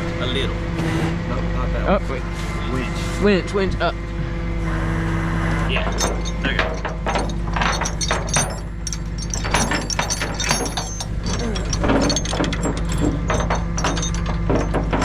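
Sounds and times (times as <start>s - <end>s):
truck engine humming: 0.0s - 15.0s
metallic clicking and rattling of chains: 5.7s - 15.0s.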